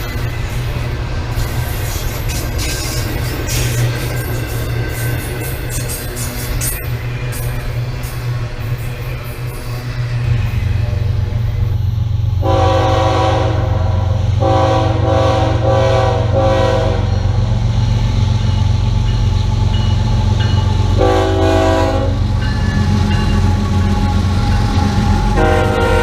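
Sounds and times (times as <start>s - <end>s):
low rumble of passing train: 0.0s - 26.0s
locomotive air horn: 12.4s - 17.4s, 21.0s - 22.2s, 25.4s - 26.0s.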